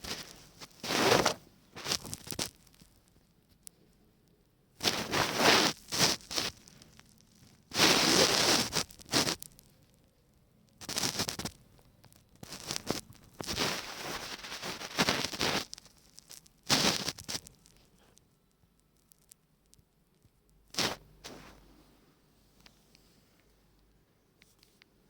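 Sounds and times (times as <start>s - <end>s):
rough scratching and rustling: 0.0s - 2.6s, 4.8s - 9.5s, 12.4s - 18.0s.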